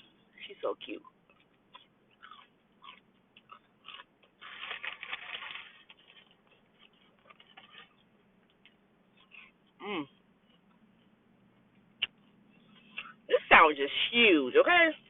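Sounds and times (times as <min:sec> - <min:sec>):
crunchy biting and chewing: 0:01.0 - 0:11.1.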